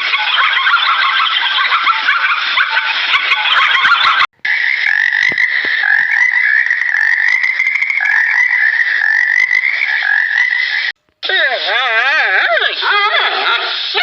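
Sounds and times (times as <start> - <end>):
frogs chorus: 4.5 - 10.9.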